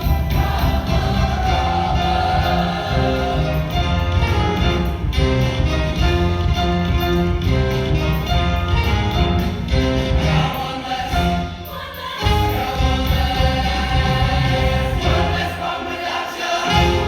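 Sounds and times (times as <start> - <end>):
choir singing pop songs: 0.0 - 4.2, 9.9 - 17.0
instrumental backing with heavy bass: 0.0 - 15.6.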